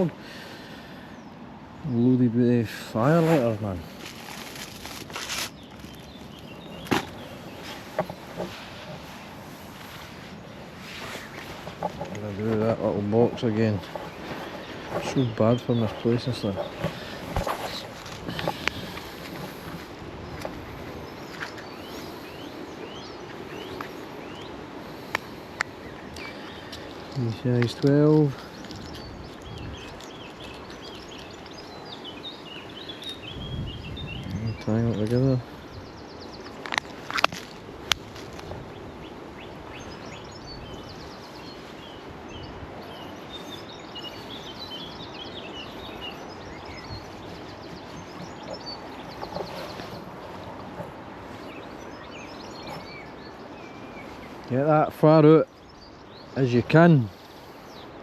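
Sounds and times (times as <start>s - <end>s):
small songbirds chirping: 0.0s - 58.0s.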